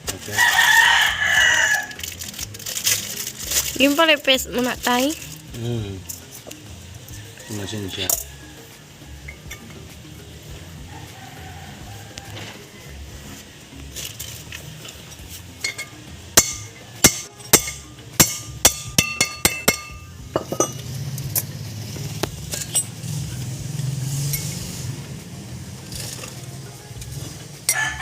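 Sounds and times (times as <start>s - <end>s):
hammer striking metal: 15.6s - 20.9s.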